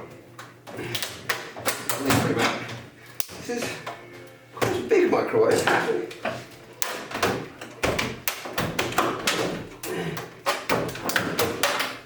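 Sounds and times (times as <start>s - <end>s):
microwave door knocking and clunking: 6.8s - 9.8s, 10.5s - 12.0s.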